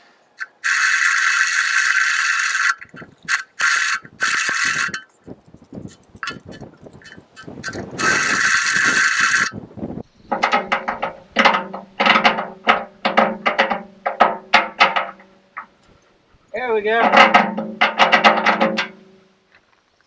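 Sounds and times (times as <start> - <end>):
high-pitched drilling: 0.4 - 5.0, 7.1 - 9.5
drill clicking: 0.4 - 5.1, 6.2 - 9.6.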